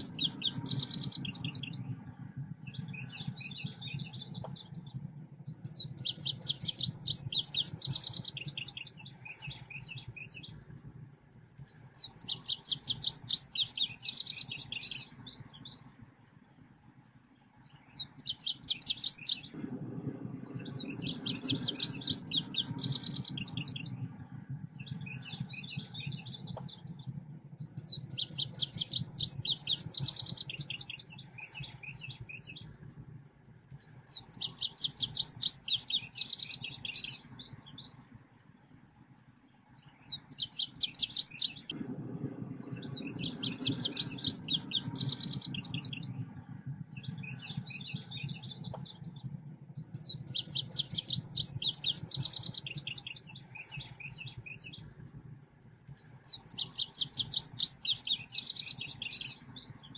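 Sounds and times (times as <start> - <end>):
low steady hum: 0.0 - 59.9
rapid high bird chirps: 11.6 - 15.9, 27.6 - 32.7, 33.8 - 38.0, 39.7 - 41.8, 42.6 - 46.3, 49.8 - 54.9, 55.9 - 59.9.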